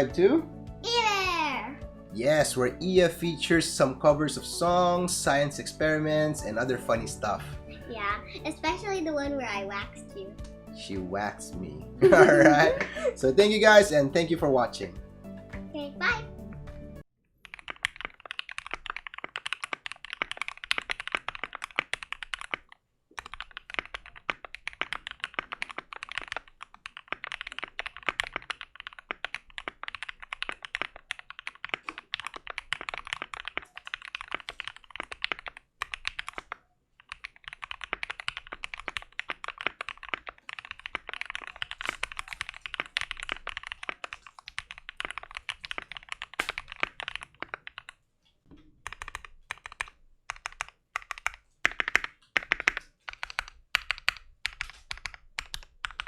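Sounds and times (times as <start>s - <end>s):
mechanical keyboard typing: 17.4s - 48.0s, 48.8s - 56.0s.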